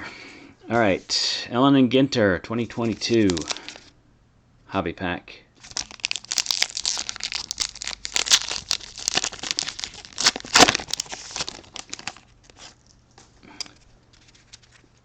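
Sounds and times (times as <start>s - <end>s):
foil wrapper tearing and crinkling: 2.9s - 3.9s, 5.6s - 13.0s.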